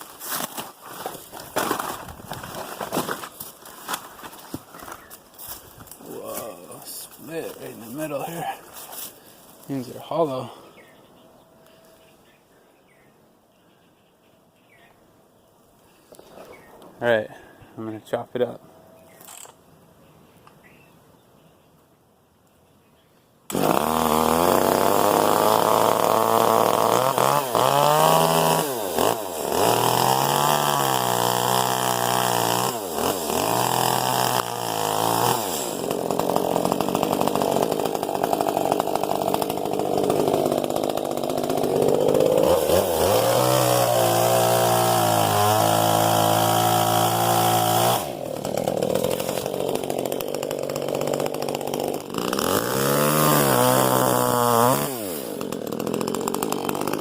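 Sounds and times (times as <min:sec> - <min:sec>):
chainsaw cutting wood: 0:00.0 - 0:10.4, 0:23.5 - 0:57.0.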